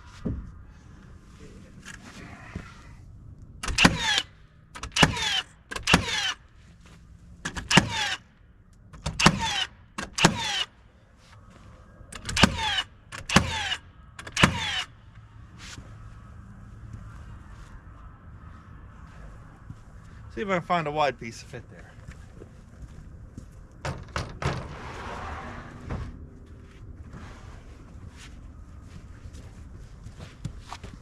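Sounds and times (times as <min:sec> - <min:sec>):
hammer driving nails into wood: 0:03.6 - 0:04.2, 0:07.4 - 0:08.2, 0:09.0 - 0:10.7, 0:12.2 - 0:14.9.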